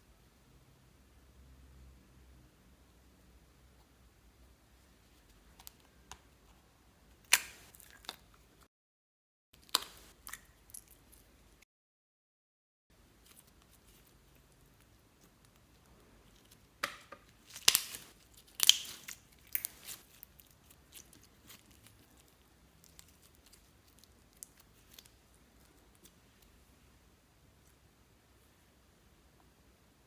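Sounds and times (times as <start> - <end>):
slime crackling and popping: 7.2 - 8.4, 9.6 - 11.3, 13.2 - 26.5.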